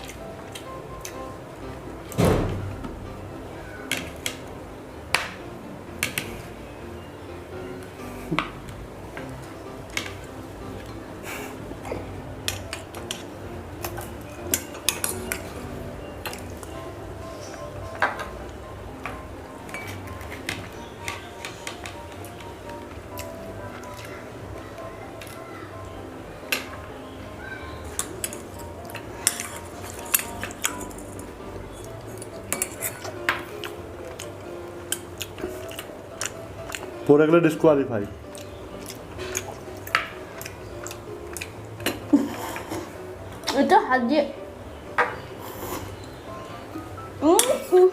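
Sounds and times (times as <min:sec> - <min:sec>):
metal spoons clinking on plates: 0:12.4 - 0:15.6, 0:19.7 - 0:21.9, 0:27.9 - 0:33.4.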